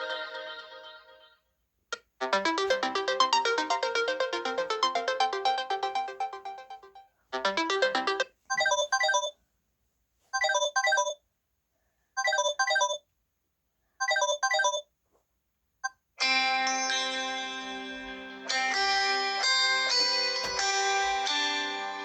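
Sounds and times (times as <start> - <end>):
melodic phone ringtone: 2.2 - 9.3
plucked-sounding ringtone: 2.2 - 9.3.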